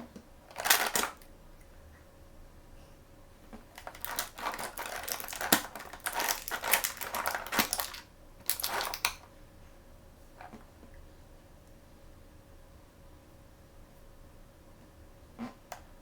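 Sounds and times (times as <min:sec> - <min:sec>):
plastic packaging crinkling: 0:00.5 - 0:01.3, 0:03.7 - 0:09.2.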